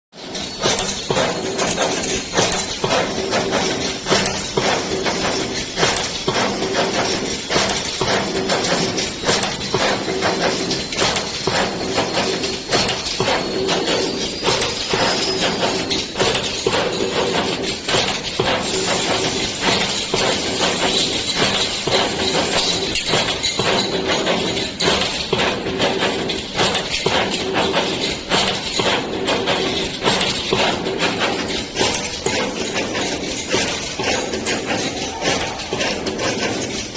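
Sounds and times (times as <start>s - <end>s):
sharp metallic knocks: 0.2s - 36.9s.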